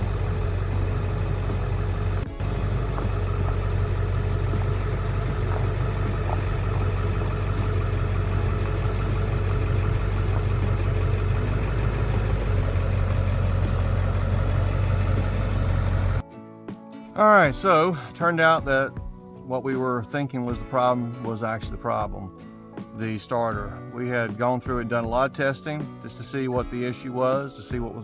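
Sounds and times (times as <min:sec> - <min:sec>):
diesel engine idling: 0:00.0 - 0:16.2.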